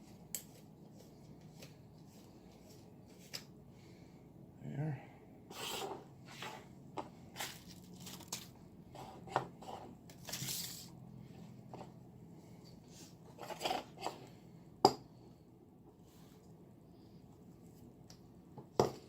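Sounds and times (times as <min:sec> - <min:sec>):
handling rustles and clicks: 0:07.4 - 0:08.6.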